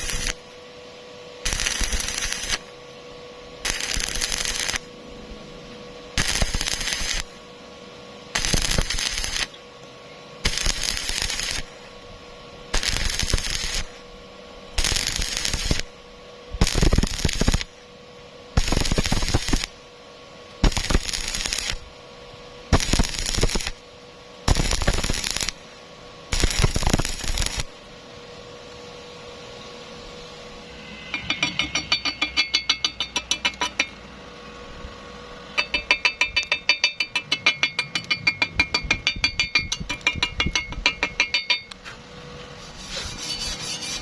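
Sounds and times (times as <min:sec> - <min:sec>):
welding arc crackling: 0:00.0 - 0:00.6, 0:01.4 - 0:02.8, 0:03.6 - 0:04.9, 0:06.2 - 0:07.4, 0:08.3 - 0:09.6, 0:10.4 - 0:12.1, 0:12.7 - 0:14.1, 0:14.7 - 0:17.8, 0:18.5 - 0:19.8, 0:20.5 - 0:22.0, 0:22.7 - 0:25.7, 0:26.3 - 0:27.8, 0:31.1 - 0:34.0, 0:35.6 - 0:41.7
steady hum: 0:00.0 - 0:44.0.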